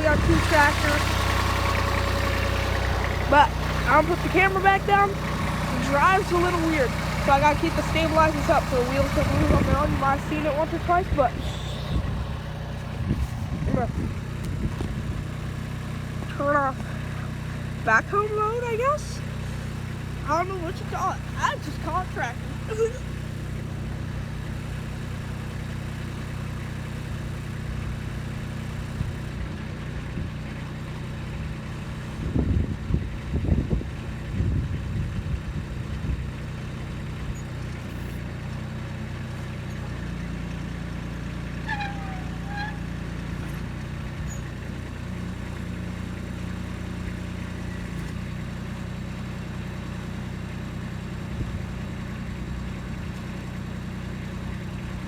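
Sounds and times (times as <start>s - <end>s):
low clunks and rattles: 0.0s - 17.3s
tractor diesel engine running: 0.0s - 55.0s
brief squeak: 41.6s - 42.9s.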